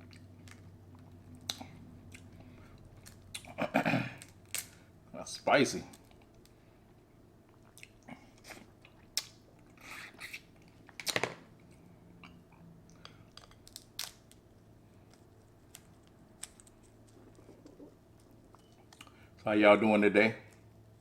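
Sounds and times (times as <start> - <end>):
crunching while eating: 0.0 - 4.8, 13.4 - 17.6
close chewing with wet clicks: 7.5 - 9.8, 15.0 - 19.2.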